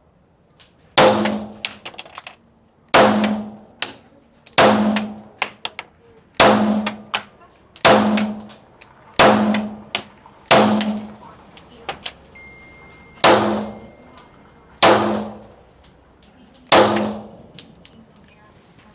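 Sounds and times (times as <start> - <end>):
gunshots: 1.0 - 1.6, 4.6 - 5.2, 6.4 - 7.1, 7.8 - 8.4, 9.2 - 9.9, 10.5 - 11.1, 13.2 - 13.8, 14.8 - 15.4, 16.7 - 17.4
light metallic clinks: 11.0 - 14.6, 15.4 - 16.7, 17.5 - 18.9.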